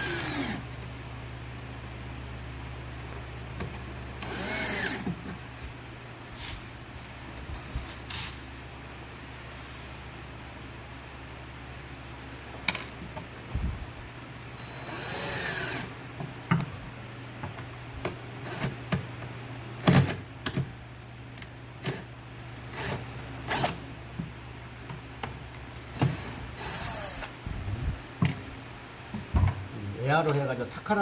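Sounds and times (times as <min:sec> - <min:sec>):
power drill driving screws: 0:00.0 - 0:00.6, 0:04.2 - 0:05.1, 0:14.6 - 0:15.9, 0:25.9 - 0:27.4
steady low hum: 0:00.0 - 0:31.0.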